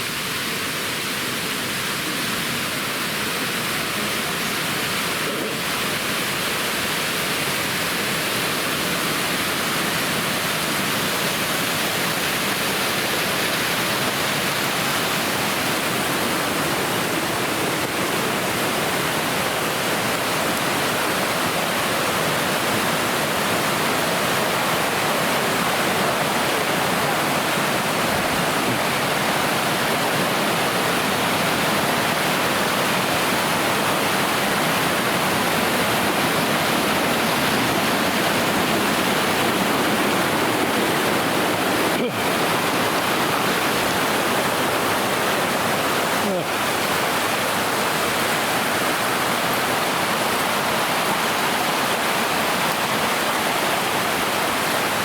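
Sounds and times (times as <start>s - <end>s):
waterfall roaring: 0.0s - 55.0s.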